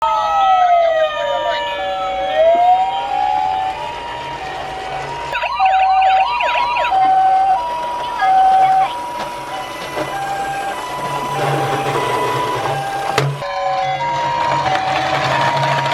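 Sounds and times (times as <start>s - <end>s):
two-tone ambulance siren: 0.0s - 15.9s
wailing siren: 0.0s - 15.9s
warbling siren: 0.0s - 15.9s.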